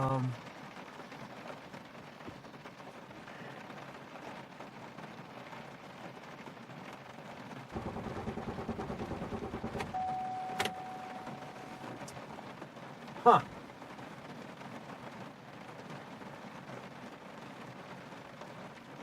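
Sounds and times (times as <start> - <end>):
car engine cranking: 7.8 - 12.2
steady electronic beep tone: 9.9 - 12.0.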